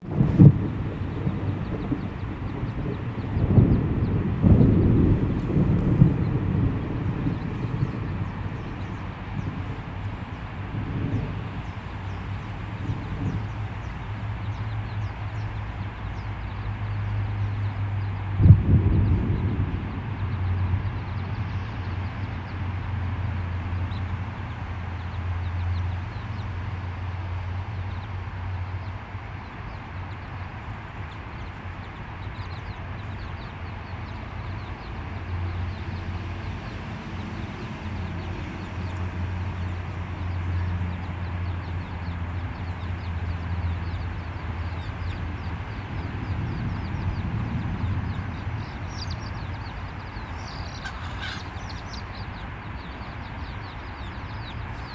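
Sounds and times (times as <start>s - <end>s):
steady low rumble: 0.0s - 54.9s
chickens clucking softly: 48.9s - 54.9s.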